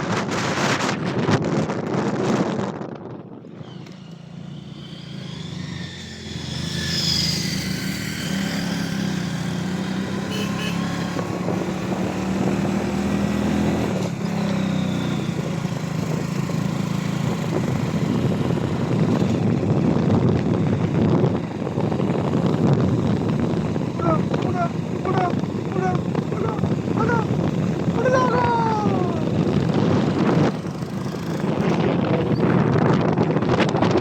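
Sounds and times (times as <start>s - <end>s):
wind buffeting microphone: 0.0s - 3.8s, 11.0s - 34.0s
vehicle engine running: 10.3s - 32.9s.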